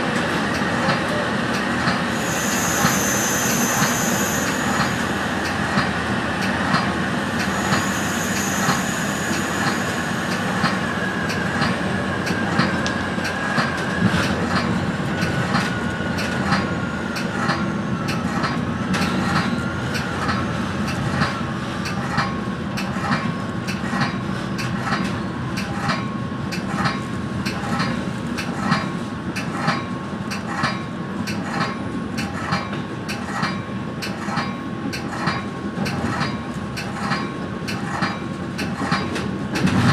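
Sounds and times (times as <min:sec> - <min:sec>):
train wheels rumbling on rail: 0:00.0 - 0:39.9
high wheel squeal: 0:02.0 - 0:05.2, 0:07.4 - 0:11.2.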